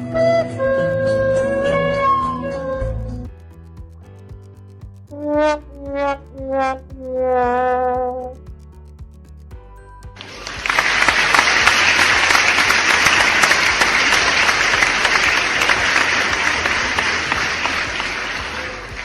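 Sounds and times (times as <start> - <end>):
large crowd clapping: 10.2 - 19.0.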